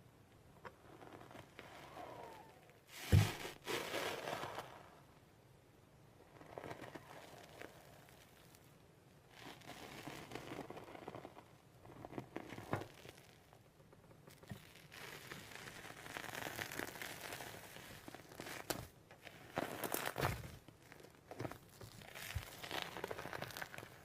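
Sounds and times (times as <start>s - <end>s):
slime squishing: 14.3s - 24.0s.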